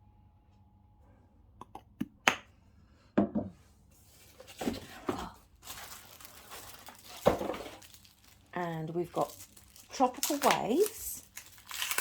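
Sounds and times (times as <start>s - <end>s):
rustling of wrapping: 4.0s - 12.0s.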